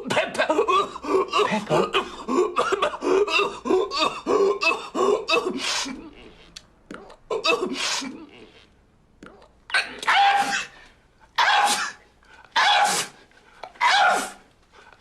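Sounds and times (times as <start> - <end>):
man coughing and gasping: 0.0 - 6.1.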